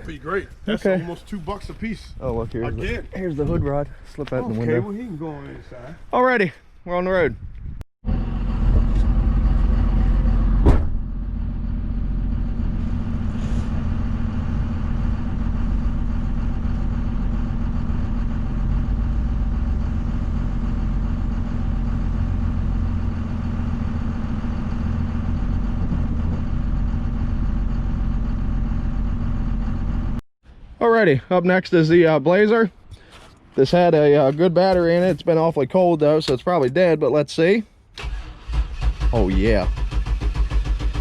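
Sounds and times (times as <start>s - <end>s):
vehicle engine and road noise: 7.6s - 30.2s.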